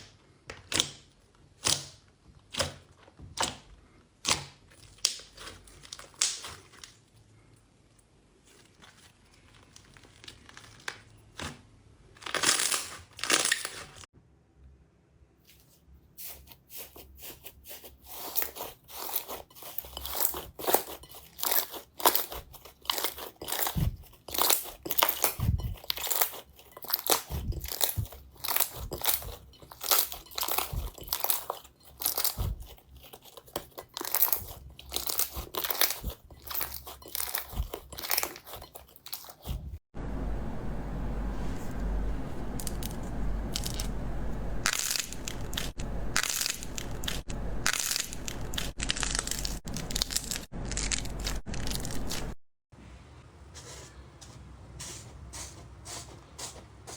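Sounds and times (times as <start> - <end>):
crunchy crackles and pops: 44.6 - 52.4.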